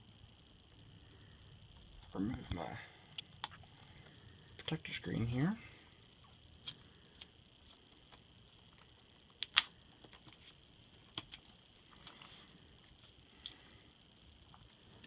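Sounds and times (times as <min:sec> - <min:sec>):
faint high whine: 0:00.0 - 0:15.0.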